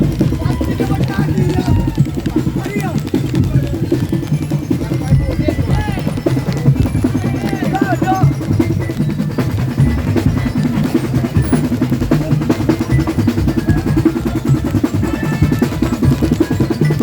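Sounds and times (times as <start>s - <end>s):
drum band playing fast beat: 0.0s - 17.0s
snare drum rolls: 0.0s - 17.0s.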